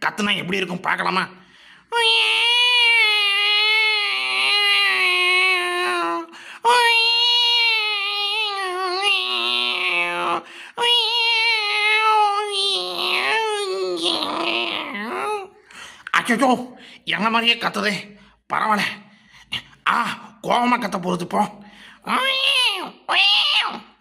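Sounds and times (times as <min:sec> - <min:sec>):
person imitating cat meowing: 0:01.9 - 0:15.6, 0:22.0 - 0:24.0.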